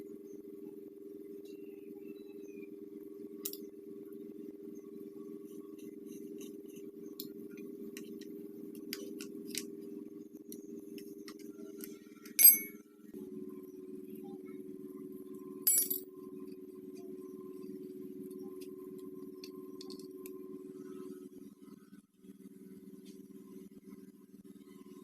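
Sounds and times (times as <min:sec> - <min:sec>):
steady low hum: 0:00.0 - 0:25.0
small metal parts handled: 0:11.3 - 0:12.8
ringing metallic clinks: 0:12.3 - 0:12.8.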